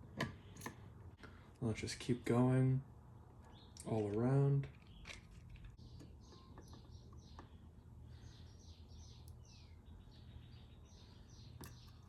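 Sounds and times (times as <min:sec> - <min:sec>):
low steady hum: 0:00.0 - 0:12.0
faint bird chirping: 0:03.4 - 0:04.1, 0:04.7 - 0:12.0.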